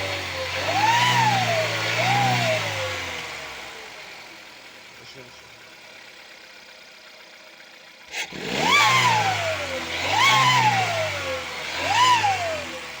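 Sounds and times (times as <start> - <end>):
car engine revving: 0.0 - 4.8, 8.0 - 13.0
turbocharger whistle: 8.1 - 12.7.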